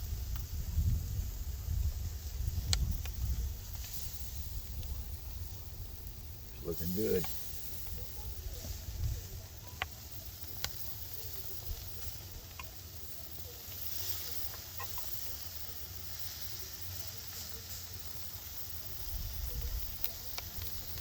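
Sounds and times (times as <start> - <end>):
sharp pops and crackles: 0.0 - 21.0
steak sizzling on grill: 0.0 - 21.0.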